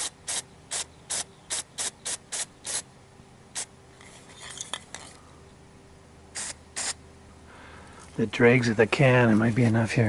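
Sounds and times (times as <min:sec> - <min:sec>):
aerosol can spraying: 0:00.0 - 0:02.8, 0:06.4 - 0:07.0.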